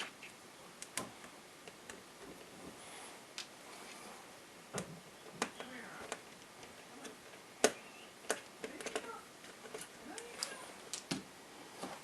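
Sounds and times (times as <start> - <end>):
screwdriver and plastic parts clicking: 5.4 - 11.2.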